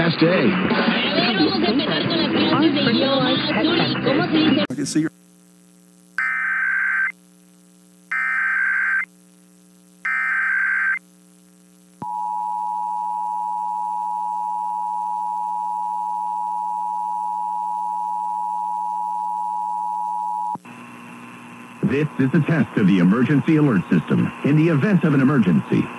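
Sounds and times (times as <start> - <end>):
faint steady hum: 4.6 - 25.9
loud steady attention tone: 6.1 - 7.2, 8.1 - 9.1, 9.9 - 11.1, 12.0 - 25.9
screechy data bursts: 6.2 - 7.2, 8.1 - 9.1, 10.0 - 11.0.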